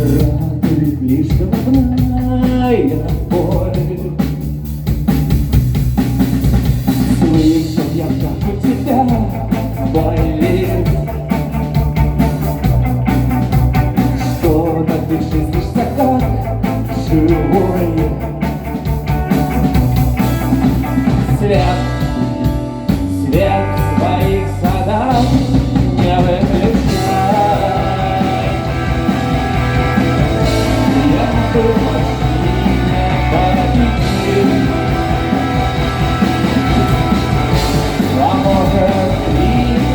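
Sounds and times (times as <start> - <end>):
rock band playing: 0.0 - 39.9.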